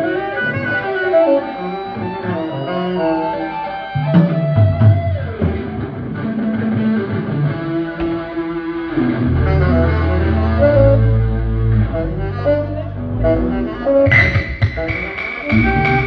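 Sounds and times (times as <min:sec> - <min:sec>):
electric guitar lines: 0:00.0 - 0:16.0
low bass notes: 0:04.0 - 0:16.0.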